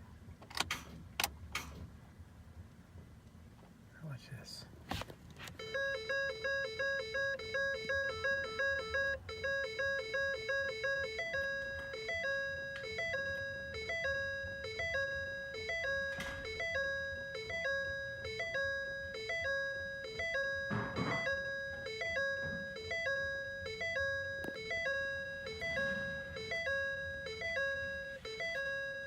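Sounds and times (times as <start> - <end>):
dashboard warning chime beeping: 5.5 - 29.0.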